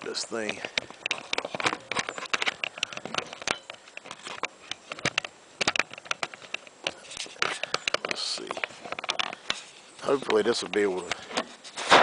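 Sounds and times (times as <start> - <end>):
camera handling clicks and knocks: 0.7 - 6.7
rubbing at microphone: 6.9 - 12.0.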